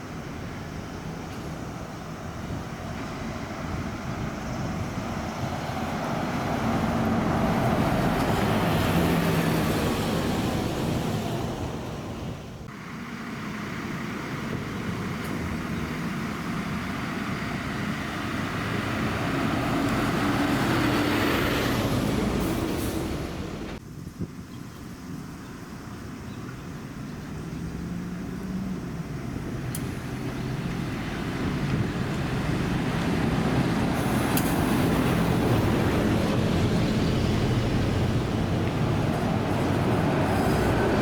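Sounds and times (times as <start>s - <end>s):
buses driving past: 0.0s - 24.0s, 24.9s - 41.0s.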